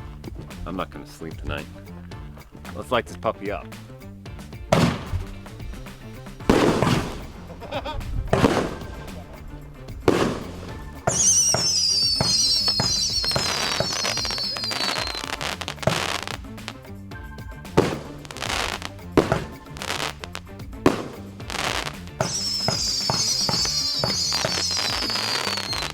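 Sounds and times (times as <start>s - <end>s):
fireworks sharp bangs: 4.4s - 16.9s, 17.6s - 25.9s
high whistle sliding down: 11.0s - 15.3s, 22.2s - 25.9s.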